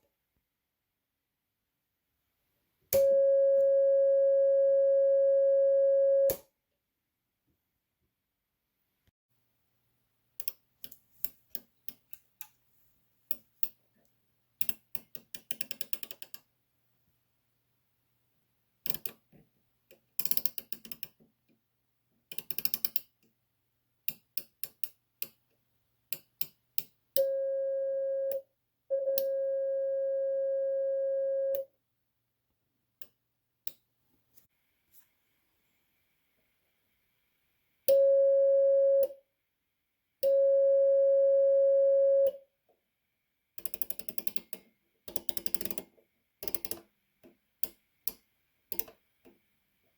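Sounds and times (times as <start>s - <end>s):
sidetone beeps: 27.2s - 31.6s, 37.9s - 39.2s.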